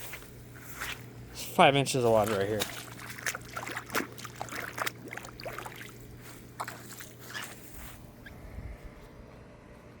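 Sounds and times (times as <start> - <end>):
footsteps splashing through water: 0.7 - 7.7.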